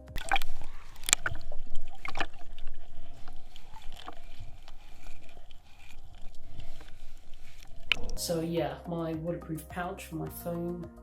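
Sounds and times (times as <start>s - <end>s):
sharp knocks and crackles: 0.0s - 8.2s
water splashing over microphone: 0.0s - 8.5s.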